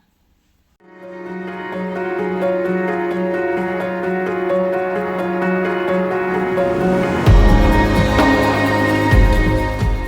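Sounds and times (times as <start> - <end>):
background music with bass line: 6.1 - 10.0.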